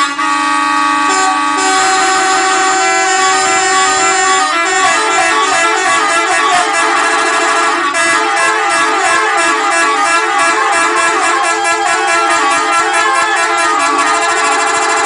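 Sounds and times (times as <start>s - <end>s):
musical bus air horns: 0.0s - 15.0s.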